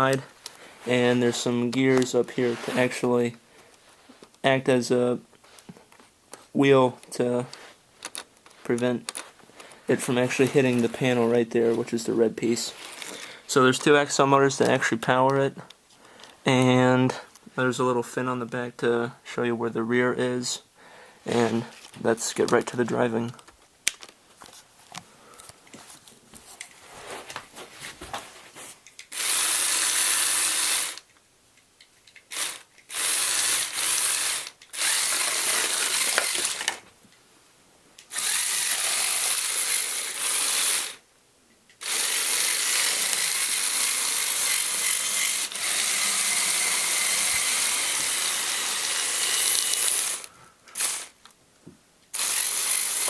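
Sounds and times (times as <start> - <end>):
toy tank gears whirring and clattering: 28.9 - 31.2, 32.1 - 36.8, 38.0 - 41.0, 41.8 - 51.2, 52.1 - 53.0.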